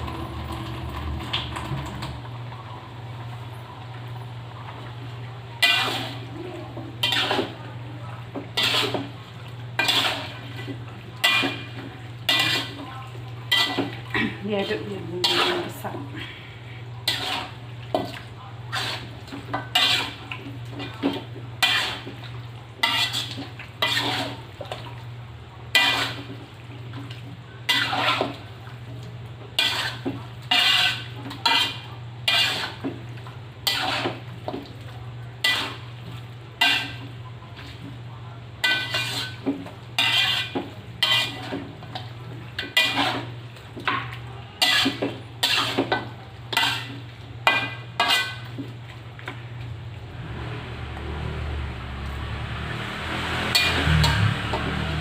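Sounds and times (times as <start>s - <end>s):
spatula scraping a cooking pan: 5.5s - 7.7s, 8.3s - 24.8s, 25.7s - 28.6s, 29.5s - 38.0s, 38.6s - 48.8s, 53.4s - 54.9s.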